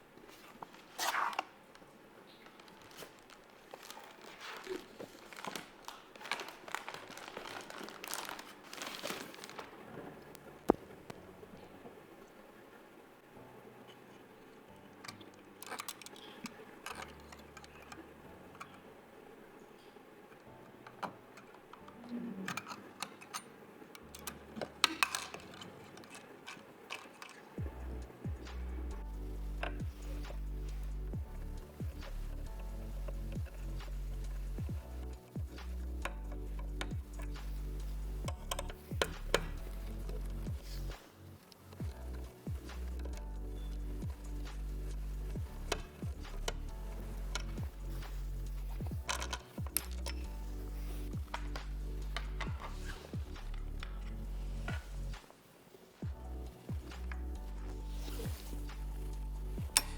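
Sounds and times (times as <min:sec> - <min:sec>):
packaging crinkling: 0:00.4 - 0:11.3.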